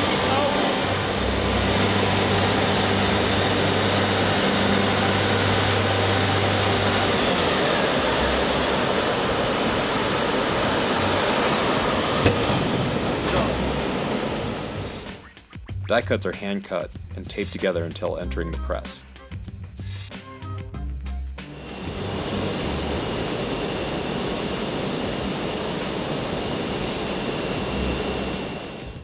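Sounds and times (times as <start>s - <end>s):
factory machinery noise: 0.0s - 15.3s, 21.5s - 29.0s
low hum: 0.0s - 15.9s, 21.5s - 29.0s.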